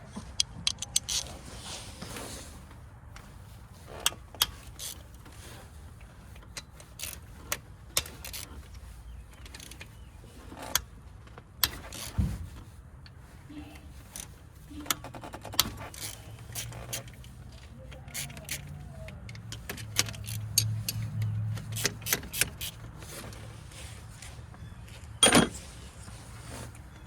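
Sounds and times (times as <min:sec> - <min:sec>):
metal tools clinking on engine: 0:13.1 - 0:27.0.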